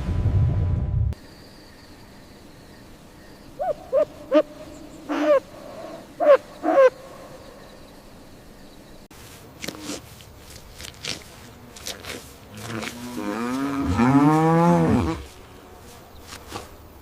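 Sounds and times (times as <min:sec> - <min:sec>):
owl hooting: 0:03.6 - 0:07.3.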